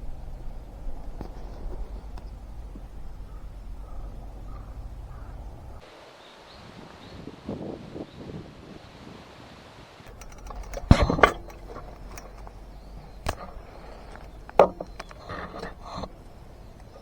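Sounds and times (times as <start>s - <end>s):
hard objects knocking and clattering: 10.1s - 17.0s.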